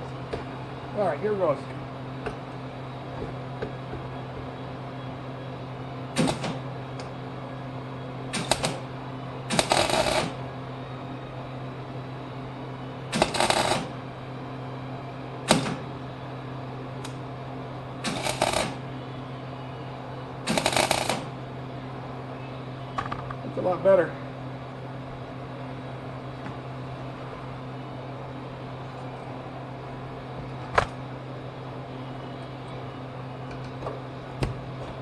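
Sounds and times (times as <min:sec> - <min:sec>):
welder low hum: 0:00.0 - 0:35.0
welding arc crackling: 0:06.2 - 0:06.6, 0:08.3 - 0:10.4, 0:13.1 - 0:14.0, 0:15.4 - 0:15.9, 0:18.0 - 0:18.8, 0:20.4 - 0:21.4.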